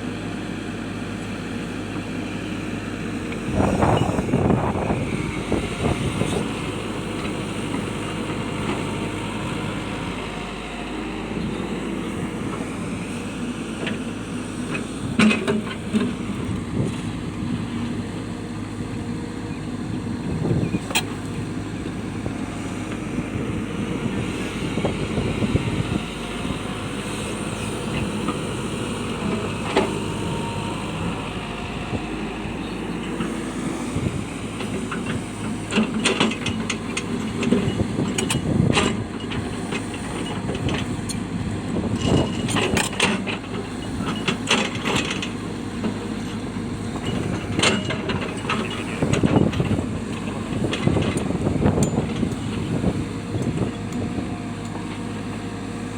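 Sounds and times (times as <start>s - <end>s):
excavator diesel engine running: 0.0s - 55.9s.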